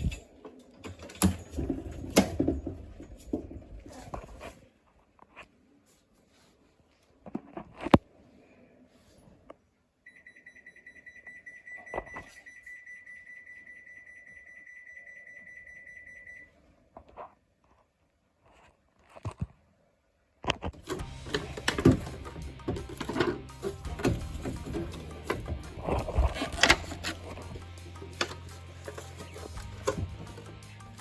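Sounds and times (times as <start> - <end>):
washing machine beeping alarm: 10.0 - 16.6
clicks and knocks: 20.5 - 31.0.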